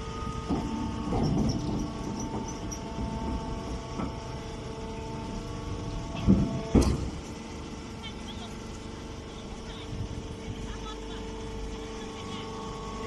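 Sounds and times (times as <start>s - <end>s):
baling machine humming: 0.0s - 13.0s
machine clunking: 0.3s - 7.4s.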